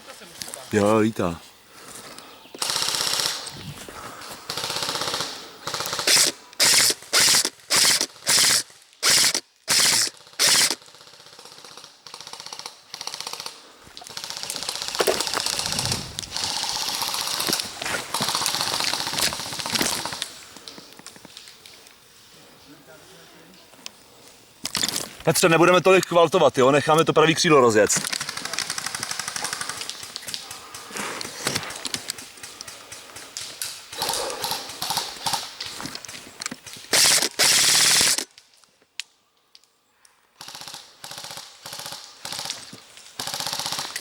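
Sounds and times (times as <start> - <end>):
airsoft guns rapid firing: 2.6 - 3.5, 4.5 - 20.2, 27.9 - 31.1, 32.2 - 35.6, 36.8 - 38.3, 40.4 - 42.6, 43.2 - 44.0.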